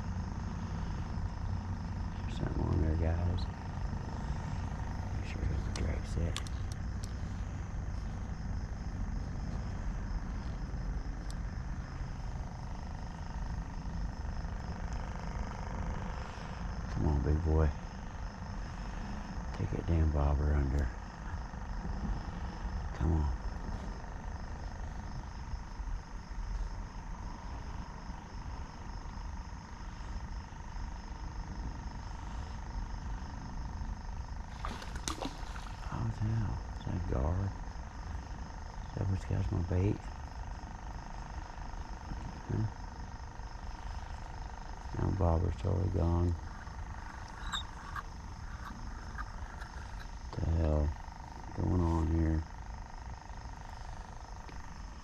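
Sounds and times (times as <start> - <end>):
insects chirping: 0.0 - 55.0
low rumbling background noise: 0.0 - 55.0
faint pulsing high tone: 43.8 - 51.0.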